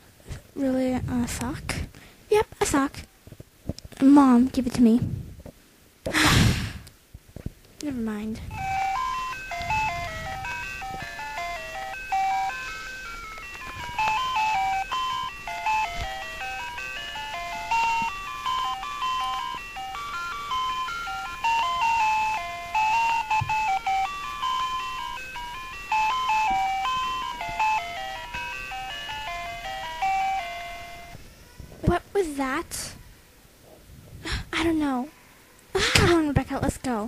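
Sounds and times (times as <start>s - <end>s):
electronic beeping melody: 8.5s - 31.2s.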